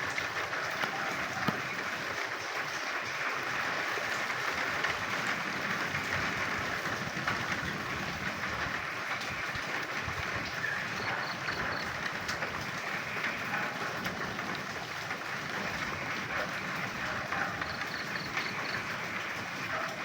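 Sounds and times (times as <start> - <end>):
rain falling: 0.0 - 20.0
frogs croaking in chorus: 10.2 - 20.0.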